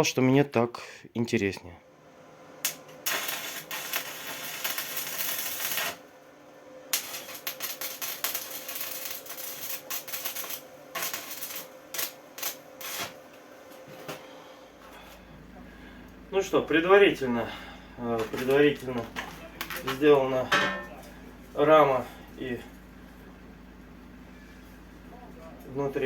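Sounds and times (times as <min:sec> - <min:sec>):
welding crackling sizzle: 0:02.6 - 0:13.8, 0:18.0 - 0:20.4.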